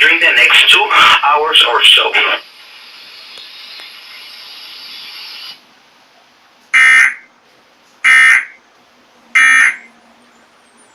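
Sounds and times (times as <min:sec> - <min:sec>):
broadcast hiss: 0:00.0 - 0:08.2.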